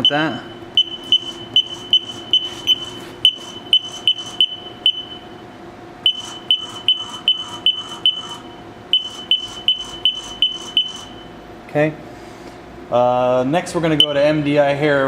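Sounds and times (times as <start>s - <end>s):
machine control short high beeps: 0.0s - 5.3s, 6.0s - 11.4s.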